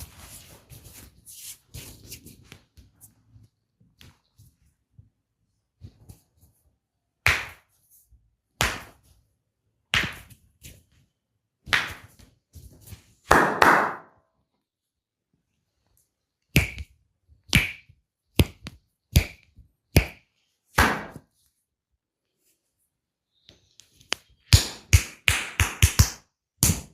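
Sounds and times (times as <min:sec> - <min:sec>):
open-handed massage slaps on body: 0:07.2 - 0:07.7, 0:08.6 - 0:09.0, 0:09.9 - 0:10.4, 0:11.7 - 0:12.3, 0:20.8 - 0:21.3, 0:24.5 - 0:26.9.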